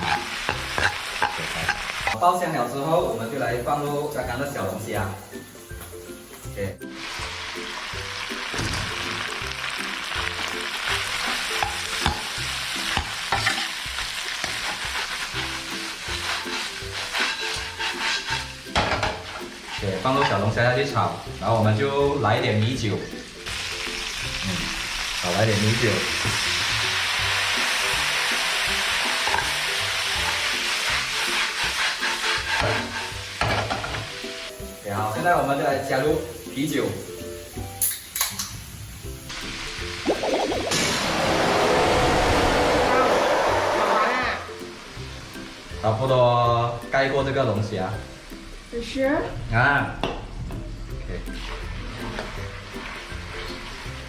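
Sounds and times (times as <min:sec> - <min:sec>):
spatula scraping a pan: 0:00.0 - 0:02.2, 0:14.4 - 0:20.5, 0:29.0 - 0:34.0
food sizzling in oil: 0:00.0 - 0:54.0.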